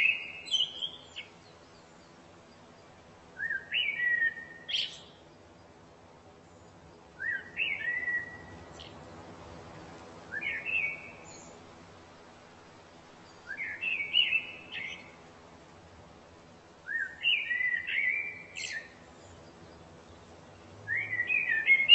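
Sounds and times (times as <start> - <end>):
songbird whistled phrases: 0.0 - 1.3, 3.4 - 5.1, 7.2 - 8.5, 10.3 - 11.4, 13.4 - 15.1, 16.9 - 18.9, 20.9 - 21.9.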